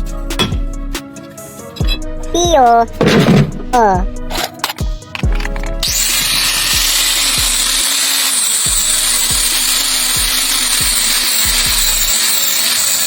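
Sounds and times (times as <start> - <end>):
music with deep beat: 0.0 - 7.9, 8.7 - 12.3
loud hissing whir: 5.8 - 13.0.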